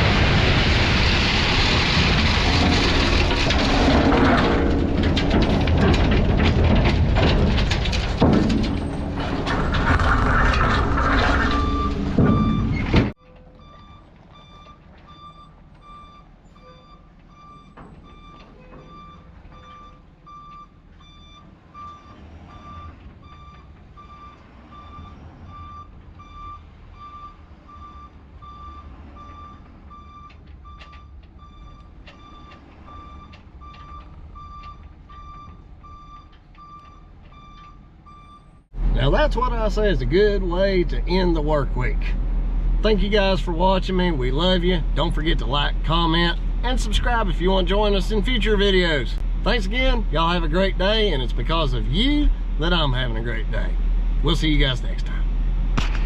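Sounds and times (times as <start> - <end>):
rough machine noise: 0.0 - 13.2
low engine rumble: 0.0 - 56.0
back-up alarm beeping: 11.4 - 38.6.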